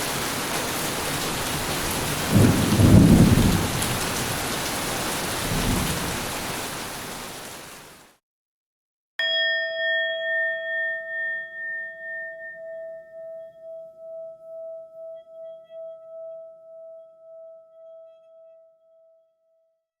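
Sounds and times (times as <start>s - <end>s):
bell-like tone ringing: 9.2s - 19.3s.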